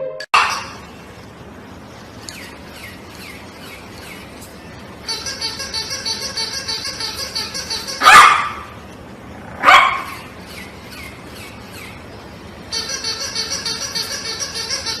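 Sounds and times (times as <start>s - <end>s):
dog barking: 0.4s - 0.8s, 8.0s - 8.8s, 9.6s - 10.3s
high-pitched chirping: 12.7s - 15.0s.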